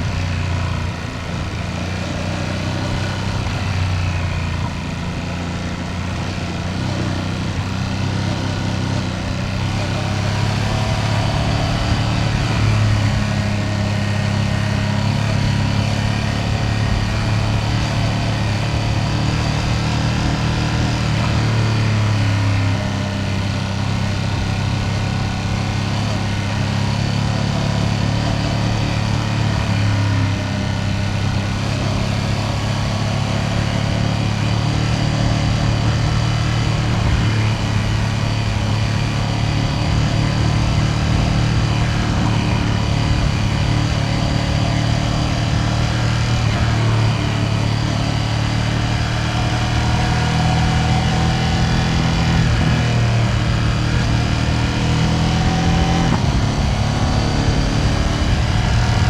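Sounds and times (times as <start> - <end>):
motorcycle engine running: 0.0 - 59.0
road noise: 0.0 - 59.0
wind noise: 51.1 - 59.0.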